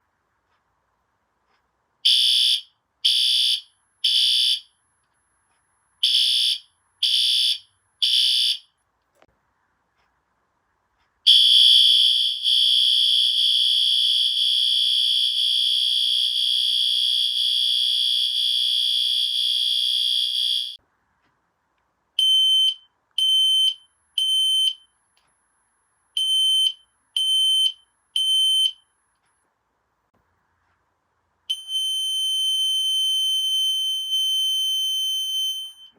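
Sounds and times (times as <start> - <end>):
fire alarm horn blasts: 2.0 - 4.7, 6.0 - 8.7, 11.3 - 20.8, 31.5 - 35.9.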